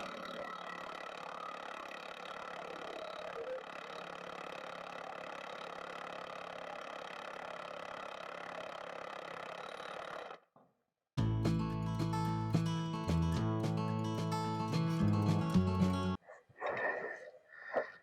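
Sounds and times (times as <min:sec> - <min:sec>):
engine idling: 0:00.0 - 0:10.4.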